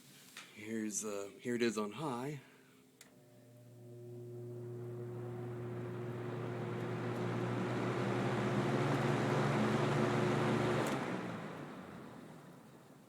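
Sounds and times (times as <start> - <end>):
fan motor hum: 3.0 - 13.0.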